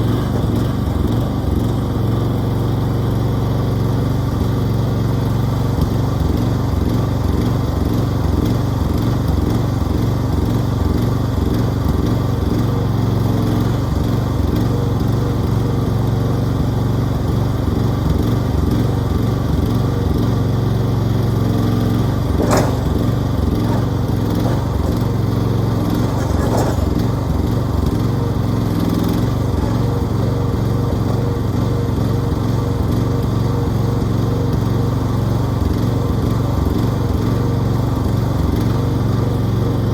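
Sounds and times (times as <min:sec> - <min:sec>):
mini excavator engine running: 0:00.0 - 0:39.9
sharp knocks: 0:22.3 - 0:27.2.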